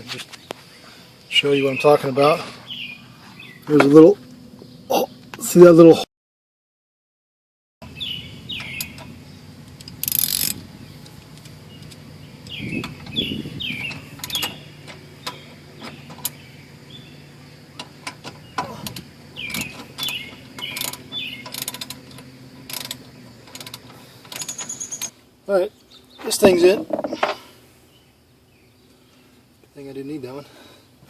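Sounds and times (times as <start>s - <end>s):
ratchet wrench clicking: 9.7s - 10.6s, 19.5s - 25.1s.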